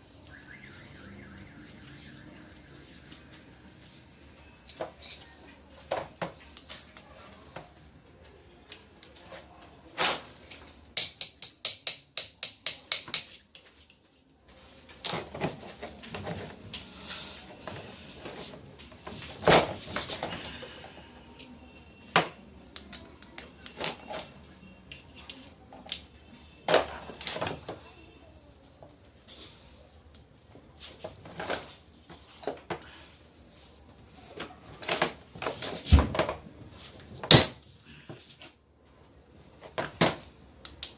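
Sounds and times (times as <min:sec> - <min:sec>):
hammer strikes: 0:11.0 - 0:13.4.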